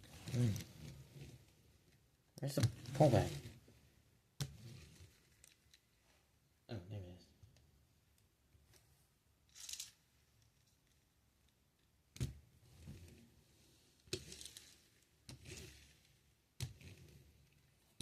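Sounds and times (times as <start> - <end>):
soft rubbing and rustling: 0.0 - 6.3.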